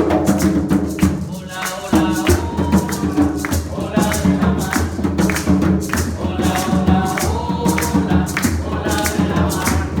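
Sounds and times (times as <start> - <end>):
shaken or struck percussion: 0.0 - 10.0
person singing: 1.4 - 5.0.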